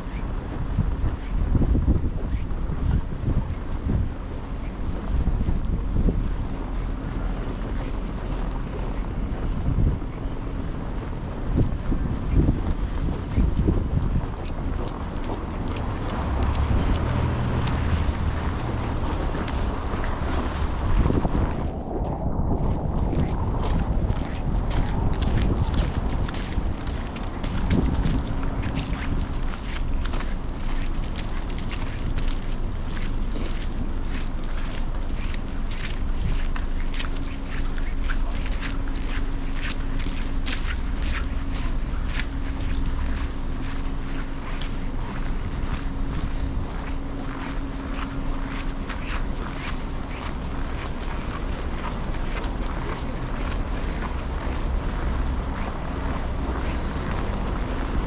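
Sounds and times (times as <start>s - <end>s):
footsteps crunching through snow: 0.0s - 58.0s
steady low hum: 0.0s - 58.0s
wind buffeting microphone: 0.0s - 58.0s.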